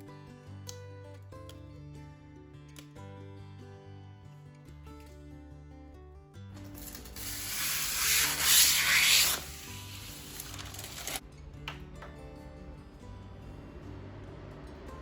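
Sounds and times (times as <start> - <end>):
background music: 0.0 - 15.0
rubbing hissing noise: 6.9 - 11.2.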